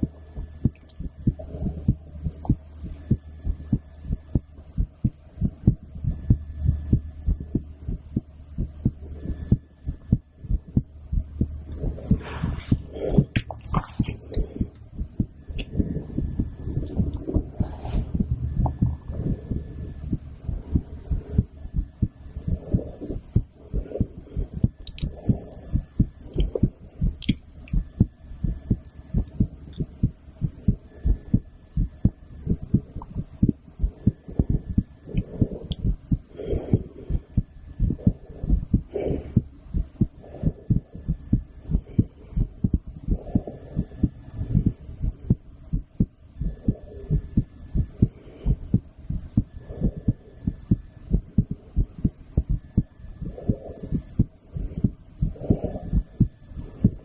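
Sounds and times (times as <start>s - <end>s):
heartbeat through stethoscope: 0.0s - 57.0s.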